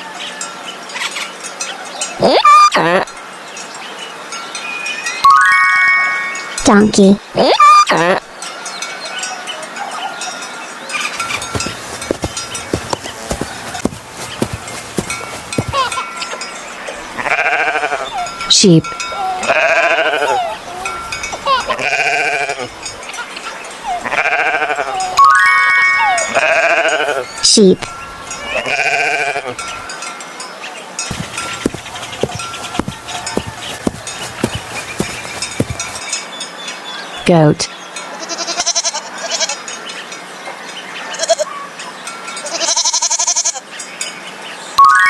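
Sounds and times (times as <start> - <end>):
bright chime-like tones: 4.4 - 6.9, 25.0 - 27.0, 44.8 - 45.0
sheep bleating: 17.0 - 22.8, 23.8 - 25.2, 26.1 - 27.4, 28.4 - 29.6, 31.1 - 35.8, 38.2 - 39.6, 42.5 - 43.6.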